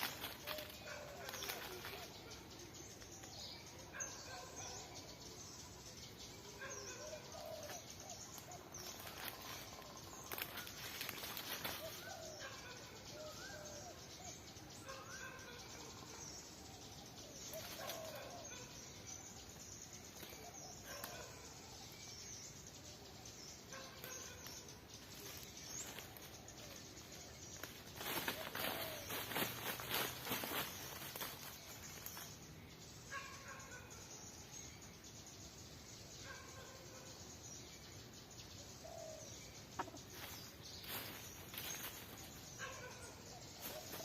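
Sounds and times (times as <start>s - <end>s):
rustles: 0.0s - 3.4s, 7.2s - 12.5s, 17.1s - 18.5s, 24.0s - 32.5s, 39.7s - 44.0s.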